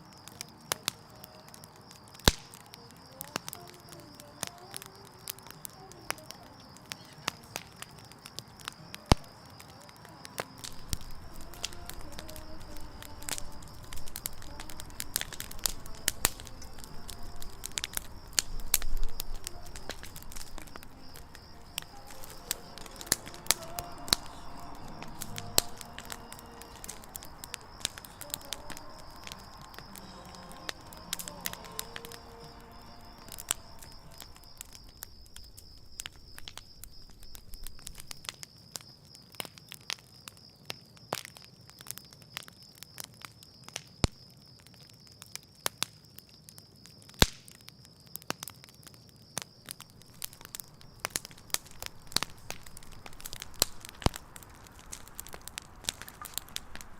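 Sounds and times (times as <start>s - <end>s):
campfire pops and crackles: 0.0s - 56.9s
low rush of flame: 10.3s - 38.2s, 50.0s - 56.9s.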